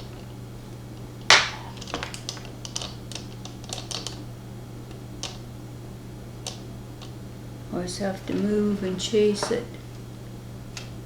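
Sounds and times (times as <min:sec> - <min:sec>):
steady low hum: 0:00.0 - 0:11.0
small objects clicking on hard surface: 0:01.3 - 0:04.2.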